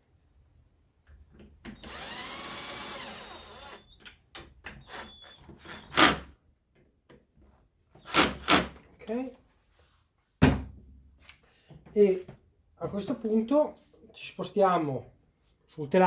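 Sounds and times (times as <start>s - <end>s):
power drill running: 1.8s - 4.0s, 4.8s - 6.3s, 8.0s - 8.8s.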